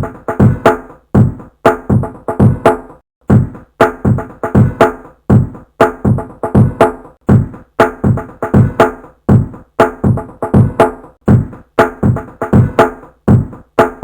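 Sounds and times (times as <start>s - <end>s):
drum loop: 0.0s - 14.0s.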